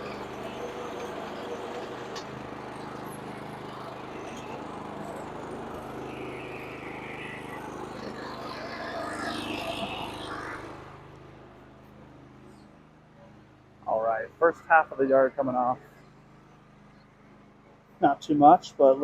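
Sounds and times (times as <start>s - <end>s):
lawn mower engine running: 0.0s - 19.0s.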